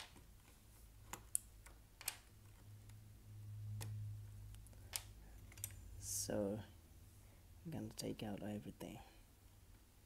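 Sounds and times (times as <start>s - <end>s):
low hum: 2.6s - 7.9s.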